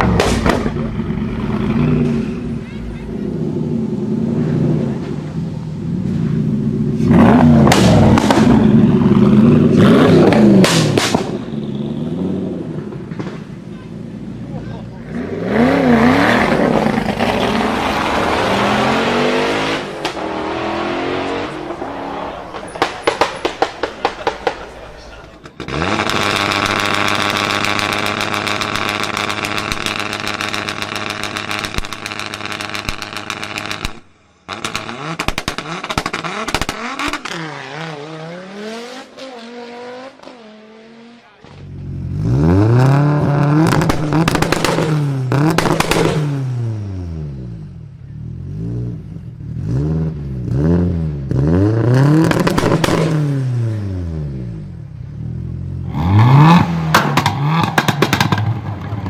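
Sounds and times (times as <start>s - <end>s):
exhaust pops and crackles: 0.0s - 2.8s, 6.0s - 14.9s, 19.6s - 20.6s, 21.3s - 37.8s, 42.6s - 46.7s, 51.3s - 53.7s, 56.1s - 59.0s
car accelerating: 0.0s - 59.0s
car engines revving: 0.0s - 59.0s.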